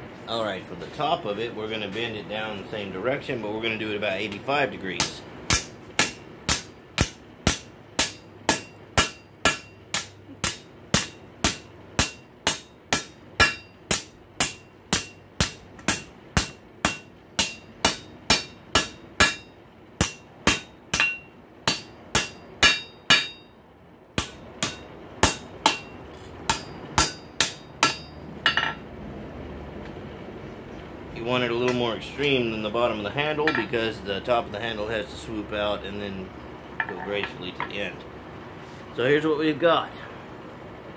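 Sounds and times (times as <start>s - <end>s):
hammer striking metal on anvil: 5.0s - 23.5s, 24.2s - 28.8s.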